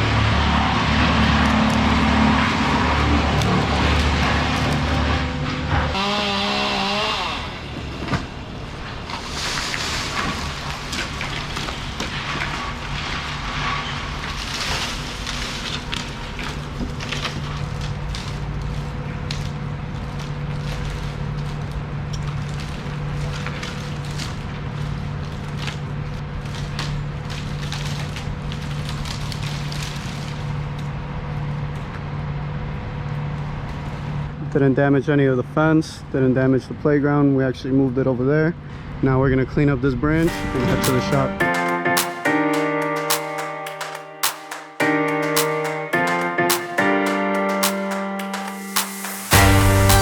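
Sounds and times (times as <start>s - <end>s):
tree limbs cracking and crashing: 0.0s - 7.2s, 8.1s - 32.1s
engine hum: 0.0s - 9.3s.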